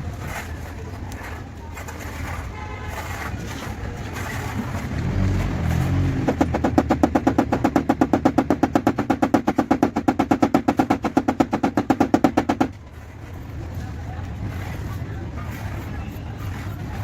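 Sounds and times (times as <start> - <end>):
rapid even tapping: 1.2 - 12.9.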